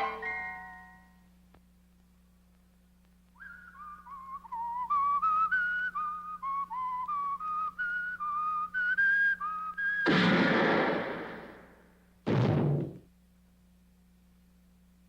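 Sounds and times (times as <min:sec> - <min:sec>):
person whistling a tune: 0:03.4 - 0:10.0.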